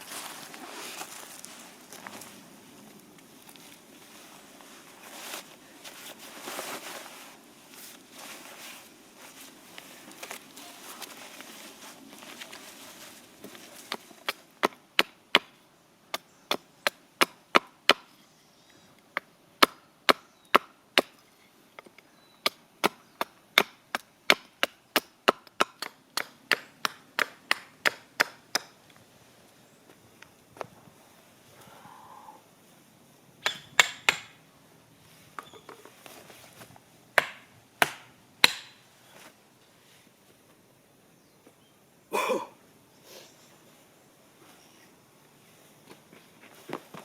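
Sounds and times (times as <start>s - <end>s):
rustling and scraping: 0.0s - 14.4s, 35.0s - 36.9s, 38.9s - 40.6s, 43.1s - 47.0s
axe striking firewood: 33.4s - 34.4s, 37.2s - 38.8s.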